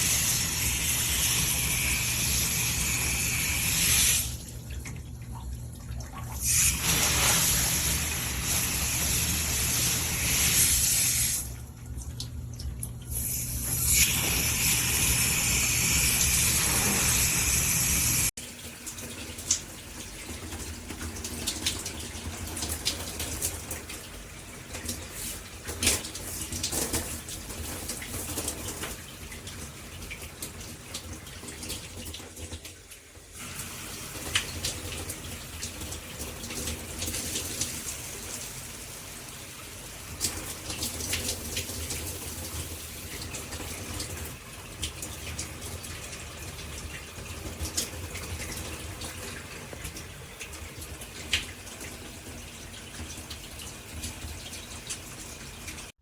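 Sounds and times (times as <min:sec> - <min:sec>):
shower head spraying water: 0:00.0 - 0:04.4, 0:06.4 - 0:11.6, 0:13.1 - 0:18.3
water splashing in tub: 0:04.1 - 0:08.8.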